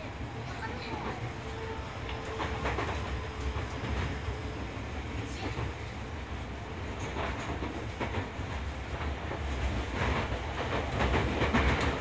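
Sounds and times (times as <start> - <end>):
electric train rumbling: 0.0 - 12.0
wheels clacking over rail joints: 6.9 - 12.0.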